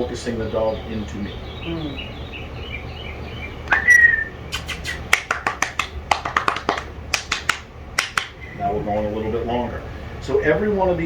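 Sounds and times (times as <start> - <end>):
short whistle: 3.7 - 5.1
quick sharp clicks: 3.7 - 6.0.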